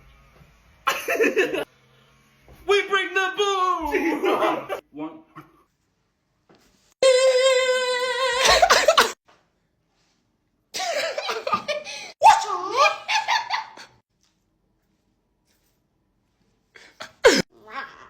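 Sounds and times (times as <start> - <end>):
person laughing: 0.9 - 1.7, 3.9 - 4.8, 8.4 - 9.2, 10.8 - 14.0.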